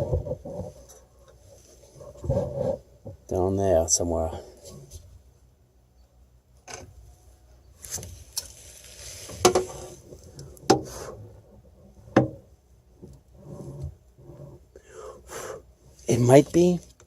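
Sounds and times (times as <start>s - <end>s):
rustling and scraping: 0.0s - 5.3s, 6.6s - 14.7s.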